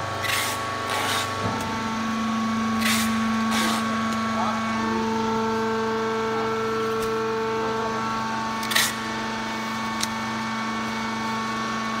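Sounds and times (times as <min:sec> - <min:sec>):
baler mechanical hum: 0:00.0 - 0:12.0.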